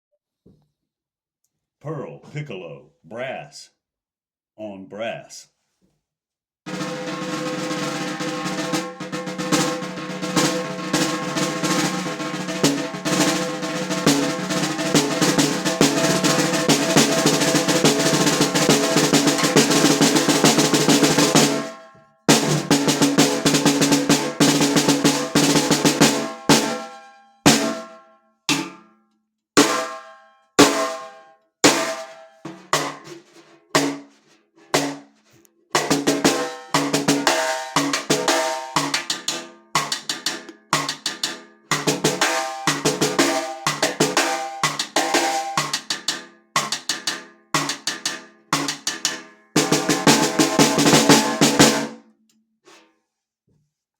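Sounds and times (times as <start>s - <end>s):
snare drum strokes ringing: 6.7s - 28.8s, 29.6s - 33.1s, 35.8s - 51.9s.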